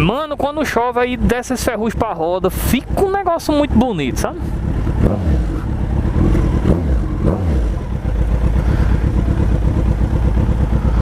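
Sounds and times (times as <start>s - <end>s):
motorcycle engine revving loud: 2.5s - 11.0s.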